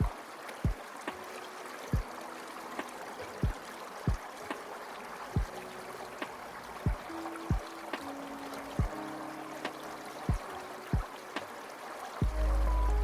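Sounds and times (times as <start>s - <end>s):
flowing water stream: 0.0s - 13.0s
music with deep kick-drum beat: 12.2s - 13.0s.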